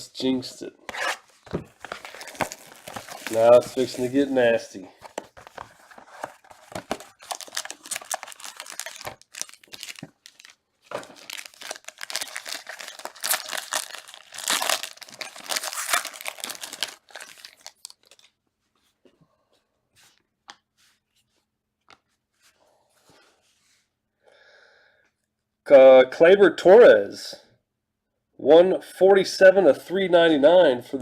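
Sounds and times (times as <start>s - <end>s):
packaging tearing and crinkling: 1.8s - 4.3s, 5.5s - 18.3s.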